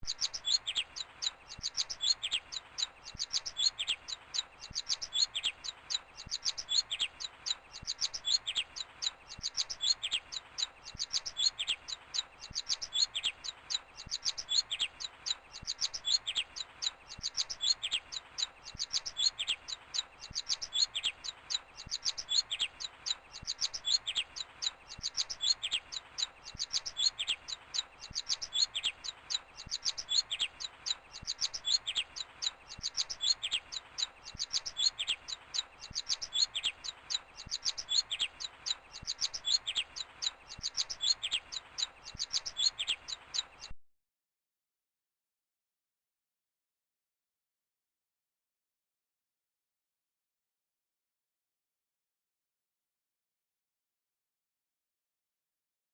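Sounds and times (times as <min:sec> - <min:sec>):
birds chirping: 0:00.0 - 0:43.8.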